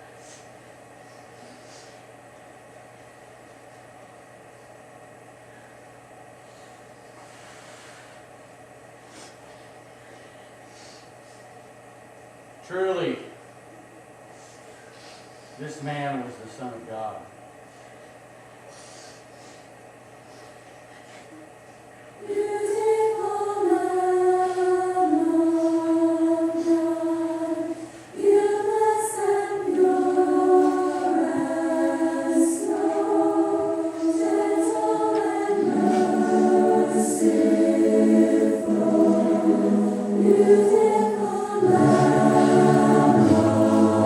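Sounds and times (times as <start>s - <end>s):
choir singing a hymn: 22.2s - 44.0s.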